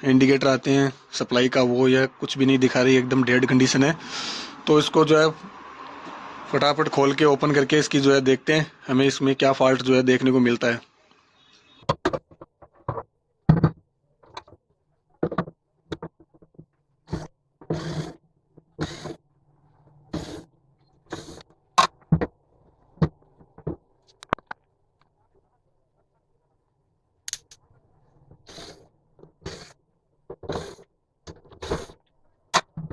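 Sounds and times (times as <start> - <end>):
tool scraping metal: 17.1 - 18.2, 18.8 - 19.2, 20.1 - 20.5, 21.1 - 21.5, 28.4 - 32.0.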